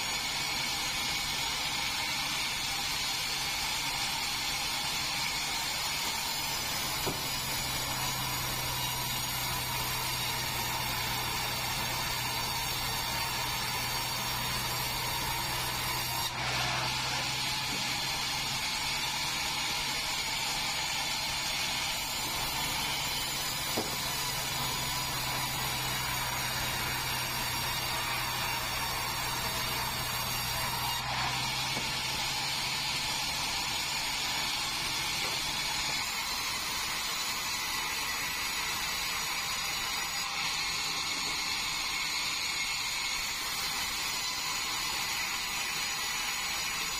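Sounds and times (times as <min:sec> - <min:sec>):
bandsaw blade whining: 0:00.0 - 0:46.9
machine humming: 0:06.1 - 0:36.9.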